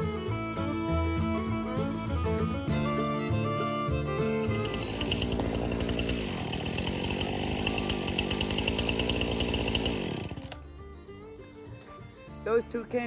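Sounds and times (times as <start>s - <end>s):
chainsaw cutting wood: 2.8s - 10.7s.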